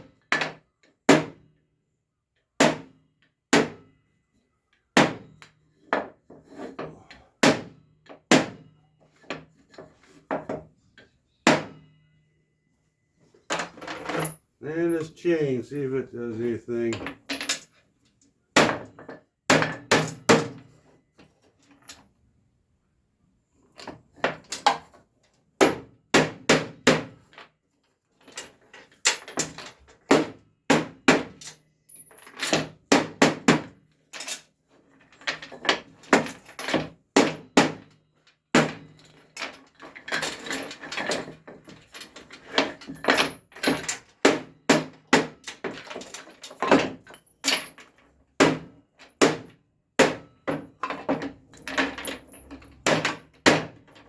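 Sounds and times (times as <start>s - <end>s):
metal chain beating wooden board: 7.4s - 8.7s, 11.4s - 11.9s, 13.5s - 14.4s, 18.6s - 20.7s, 25.6s - 27.4s, 28.3s - 34.4s, 35.1s - 54.0s.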